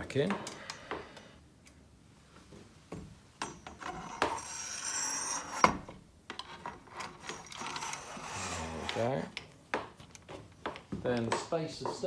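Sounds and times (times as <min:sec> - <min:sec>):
metal scraping and rubbing: 0:03.6 - 0:09.4.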